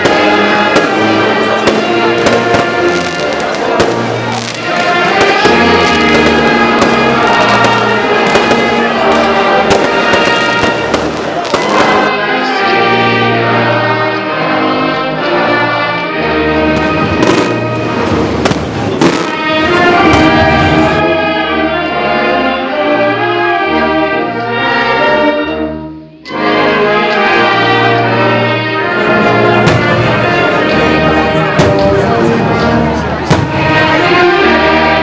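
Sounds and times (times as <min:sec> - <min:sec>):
firework bangs: 0:00.0 - 0:12.1, 0:16.7 - 0:21.0, 0:29.0 - 0:34.5
orchestral music with brass and strings: 0:00.0 - 0:35.0.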